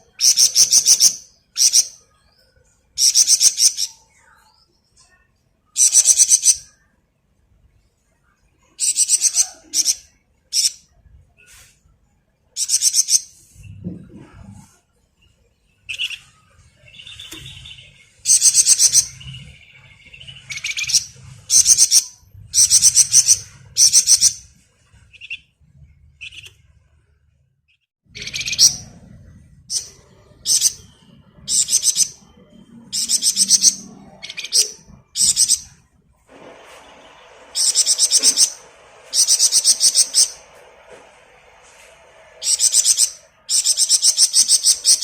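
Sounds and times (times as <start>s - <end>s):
songbird chirps: 0.0s - 45.0s
songbird rattling trills: 36.9s - 40.5s, 42.4s - 45.0s.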